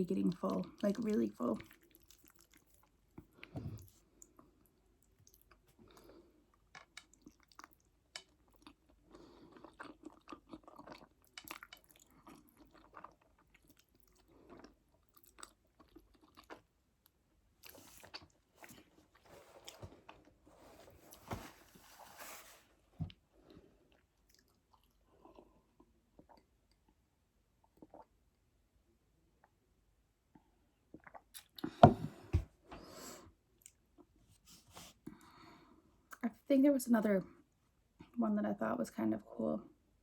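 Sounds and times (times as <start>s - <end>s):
person chewing food: 1.6s - 20.8s, 23.8s - 27.0s, 27.6s - 28.2s, 30.9s - 32.0s.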